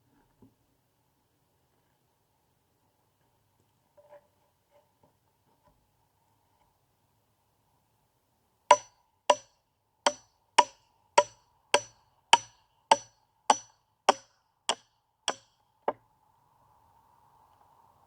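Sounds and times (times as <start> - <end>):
sharp ringing knocks: 8.7 - 9.4, 10.1 - 15.4.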